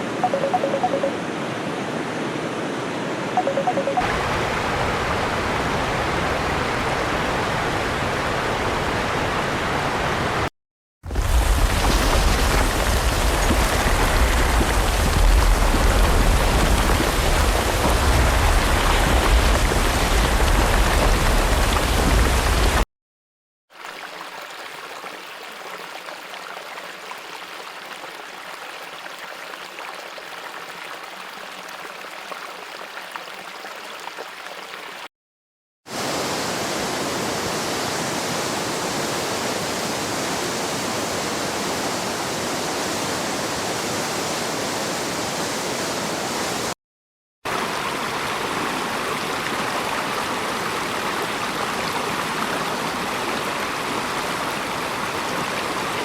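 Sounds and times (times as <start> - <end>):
stream water rushing: 0.0 - 10.5, 23.8 - 35.1, 35.9 - 46.8, 47.5 - 56.0.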